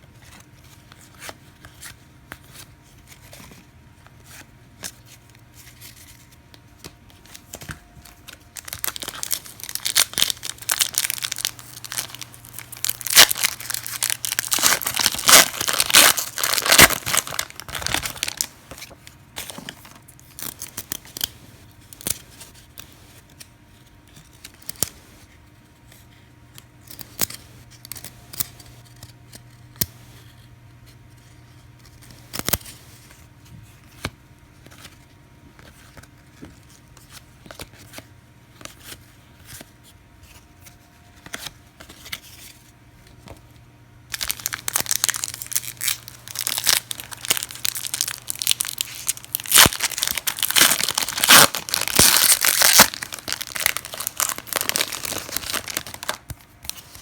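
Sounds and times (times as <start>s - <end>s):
cards being handled: 0.1s - 43.5s, 44.1s - 57.0s
wrapper tearing and crinkling: 8.0s - 21.3s, 44.1s - 57.0s.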